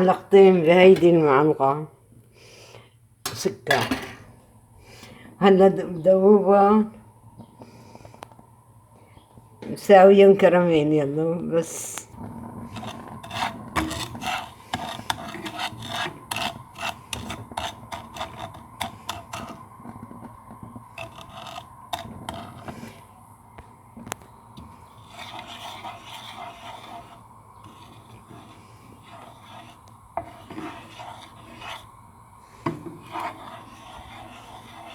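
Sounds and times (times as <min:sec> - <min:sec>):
spoon scraping frying pan: 0:12.4 - 0:23.1, 0:24.6 - 0:34.9.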